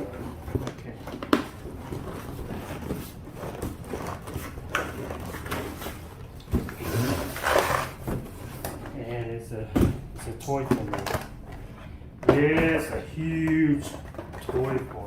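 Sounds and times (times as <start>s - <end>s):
knocks and bumps of handling: 0.0s - 6.8s, 7.9s - 9.0s, 9.7s - 15.0s
packaging rustling: 0.0s - 8.8s.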